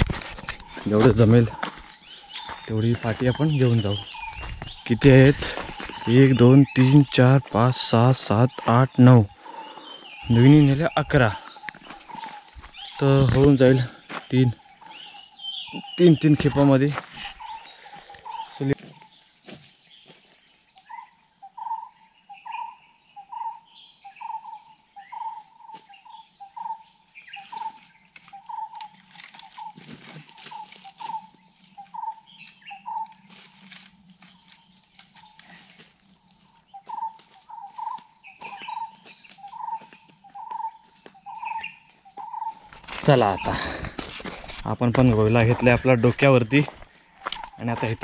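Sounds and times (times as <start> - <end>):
sticks rustling and cracking: 0.0 - 7.6, 11.4 - 13.6, 27.6 - 38.6
faint bird chirps: 0.5 - 33.4, 36.4 - 44.1.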